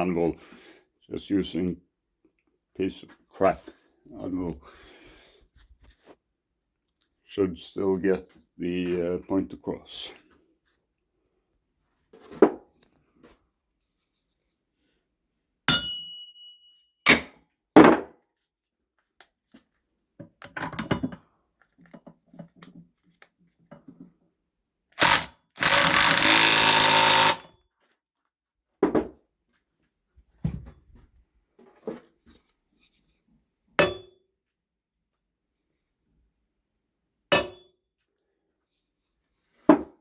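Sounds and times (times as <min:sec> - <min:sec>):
hammer striking anvil: 0:15.7 - 0:16.5, 0:33.8 - 0:34.1, 0:37.3 - 0:37.7
impact wrench running: 0:25.0 - 0:27.5.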